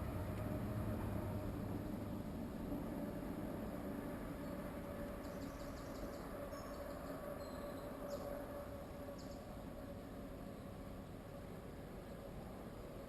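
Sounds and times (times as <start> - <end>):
faint high bird chirps: 5.2 - 8.4.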